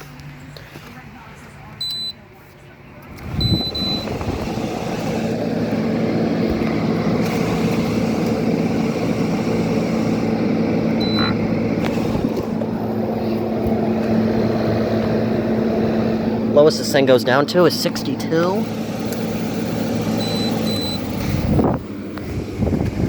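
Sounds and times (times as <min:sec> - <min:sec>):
low hum: 0:00.0 - 0:23.0
control panel beep: 0:01.8 - 0:02.2, 0:03.4 - 0:04.2, 0:11.0 - 0:11.5, 0:18.6 - 0:21.6
air conditioner fan rushing: 0:02.8 - 0:23.0.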